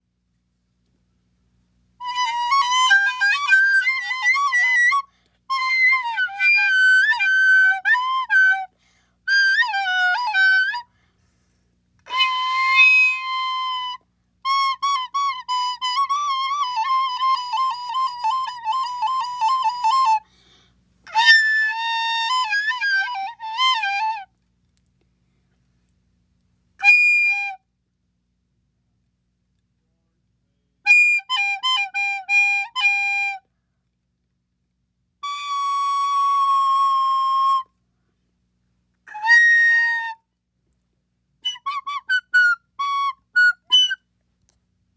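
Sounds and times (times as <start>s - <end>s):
recorder playing: 2.0s - 8.7s, 9.3s - 10.8s, 12.1s - 20.2s, 21.1s - 24.3s, 30.9s - 33.4s, 35.2s - 37.7s, 41.4s - 44.0s.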